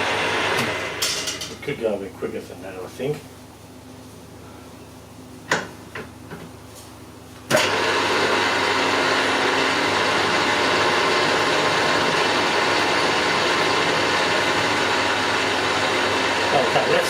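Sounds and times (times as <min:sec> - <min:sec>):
milling machine spindle running: 0:07.5 - 0:17.0.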